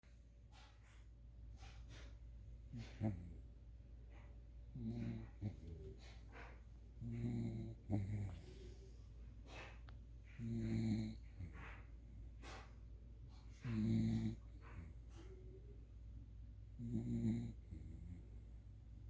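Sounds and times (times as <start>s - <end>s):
soft breathing: 0.5s - 15.9s
pet snoring: 2.7s - 3.4s, 4.1s - 12.7s, 13.5s - 15.3s, 16.8s - 18.4s.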